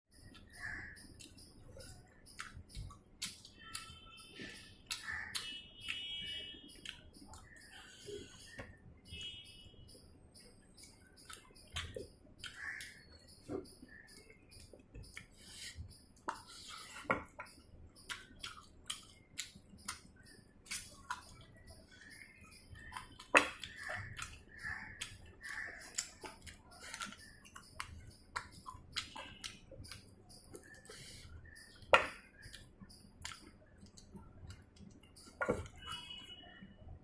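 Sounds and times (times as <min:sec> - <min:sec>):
wet mouth clicks and smacks: 0:33.2 - 0:35.3.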